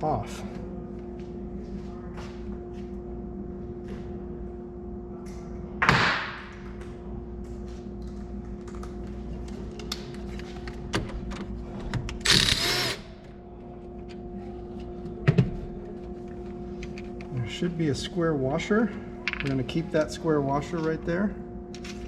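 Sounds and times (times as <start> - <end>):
steady low hum: 0.0 - 22.0
power tool bursts: 12.2 - 13.1.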